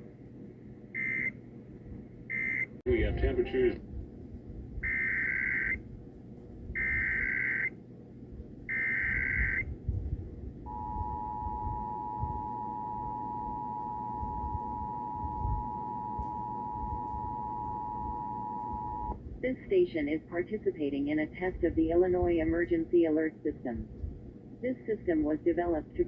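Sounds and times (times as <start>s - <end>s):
two-tone alert signal: 10.7s - 19.2s.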